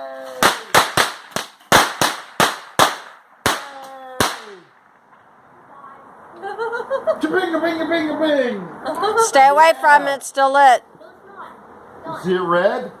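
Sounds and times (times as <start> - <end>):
firework bangs: 0.3 - 5.5.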